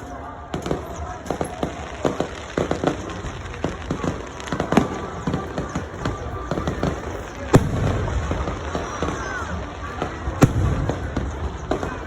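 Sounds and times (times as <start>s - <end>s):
fireworks bangs and pops: 0.0s - 12.0s.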